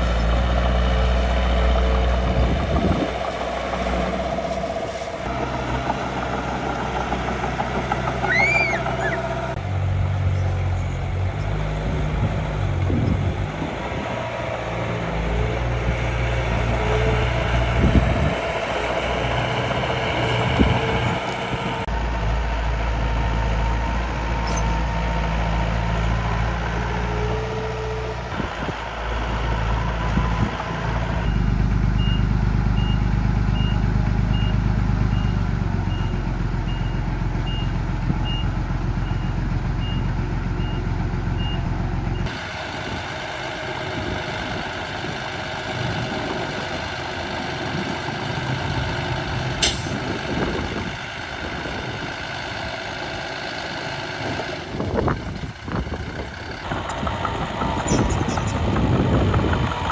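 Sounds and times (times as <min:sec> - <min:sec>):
toy truck engine drone: 0:06.3 - 0:09.6, 0:56.6 - 0:59.9.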